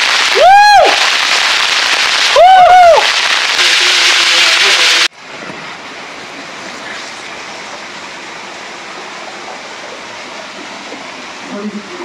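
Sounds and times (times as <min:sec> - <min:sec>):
falling water rushing: 0:00.0 - 0:05.1.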